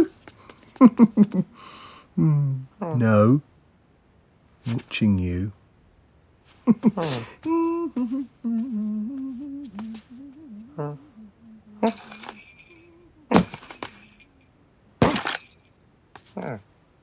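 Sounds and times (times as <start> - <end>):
person humming: 7.5 - 11.8
glassy jangling crashes: 11.8 - 14.3, 15.0 - 15.7.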